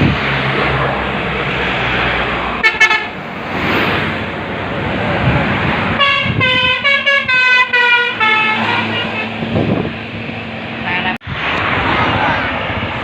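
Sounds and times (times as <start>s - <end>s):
road and engine noise: 0.0s - 13.0s
musical air horn toots: 2.6s - 3.1s, 6.0s - 9.4s.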